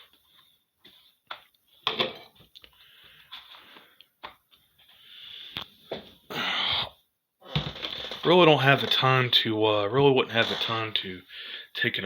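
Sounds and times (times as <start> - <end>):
plastic scraping: 7.4 - 9.6, 10.2 - 11.2.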